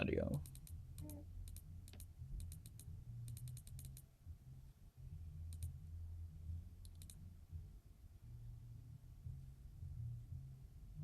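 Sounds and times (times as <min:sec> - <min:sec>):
faint low hum: 0:00.0 - 0:11.0
computer mouse buttons clicking: 0:00.3 - 0:04.0, 0:05.5 - 0:05.7, 0:06.8 - 0:07.2.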